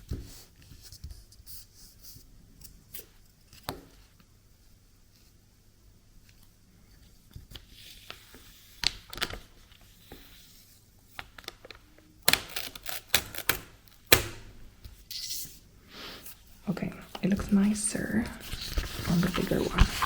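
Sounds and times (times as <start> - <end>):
tape ripping: 12.2 - 14.4.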